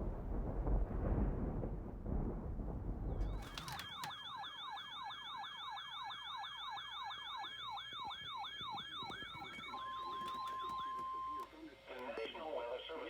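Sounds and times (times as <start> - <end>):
electronic siren yelping: 3.2 - 12.2.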